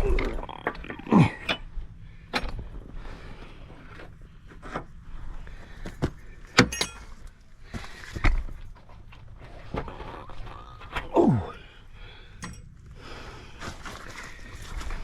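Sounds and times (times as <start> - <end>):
metal parts and tools clanking: 6.5 - 7.4, 12.4 - 12.9.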